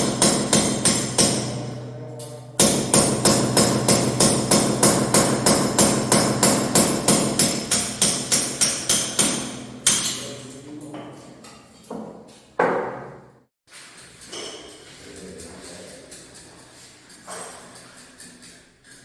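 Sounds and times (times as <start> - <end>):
hammer blows: 0.0 - 1.9, 2.6 - 10.2.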